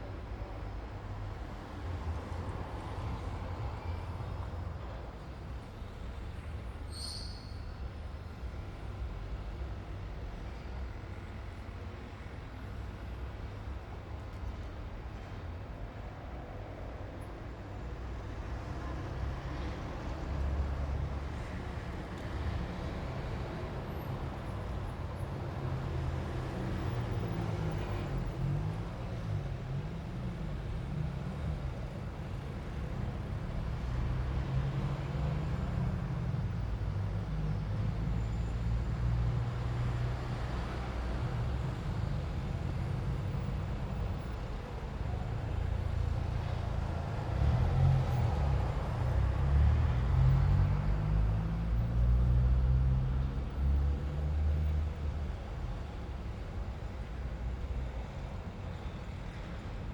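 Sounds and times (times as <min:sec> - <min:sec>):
vehicles passing: 0:17.9 - 0:59.8.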